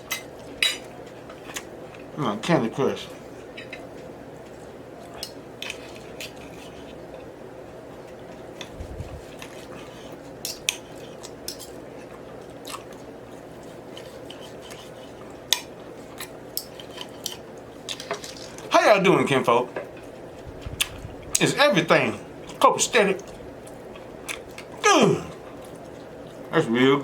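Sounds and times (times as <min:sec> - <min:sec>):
cutlery clicking on a plate: 0:00.0 - 0:00.9, 0:15.5 - 0:17.4
low background hum: 0:00.0 - 0:27.0
chewing and mouth smacks: 0:08.3 - 0:14.9, 0:23.2 - 0:26.5.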